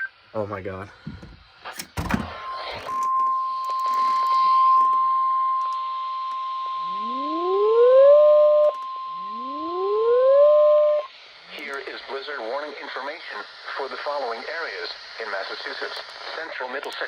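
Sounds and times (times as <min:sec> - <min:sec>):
steady high alarm beep: 0:02.3 - 0:11.1
rising siren wails: 0:02.4 - 0:11.1.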